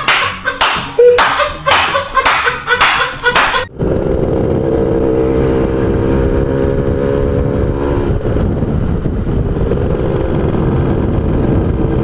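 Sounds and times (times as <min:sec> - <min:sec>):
motorcycle engine running hard: 0:03.7 - 0:12.0.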